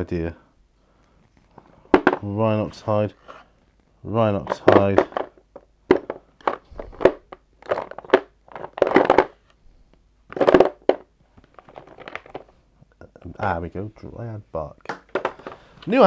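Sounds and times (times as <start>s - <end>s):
plastic paint pots clattering: 1.5s - 2.3s, 4.4s - 9.4s, 10.3s - 12.6s, 14.8s - 16.0s.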